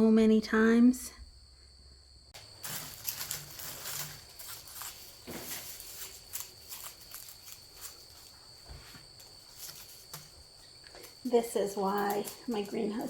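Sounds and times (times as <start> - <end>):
dry rustling: 2.4 - 13.0.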